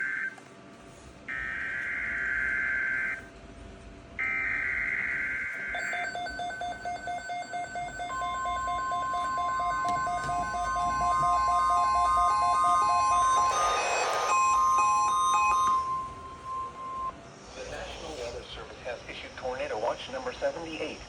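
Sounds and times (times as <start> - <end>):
repeating electronic beeps: 5.6 - 17.2
steady alert tone: 5.7 - 17.2
shrill digital data bursts: 7.9 - 17.2.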